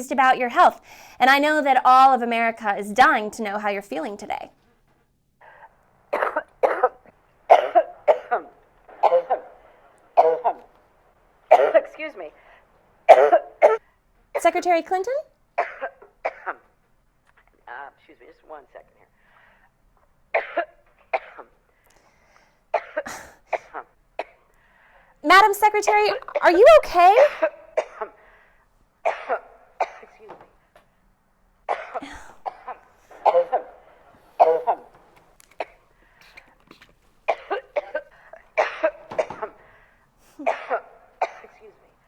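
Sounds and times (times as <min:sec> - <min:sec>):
person coughing: 0:05.6 - 0:09.6, 0:10.2 - 0:10.8, 0:11.5 - 0:12.0, 0:13.1 - 0:13.8, 0:15.6 - 0:16.7, 0:22.8 - 0:24.4, 0:27.2 - 0:28.2, 0:29.1 - 0:30.4, 0:31.7 - 0:41.8.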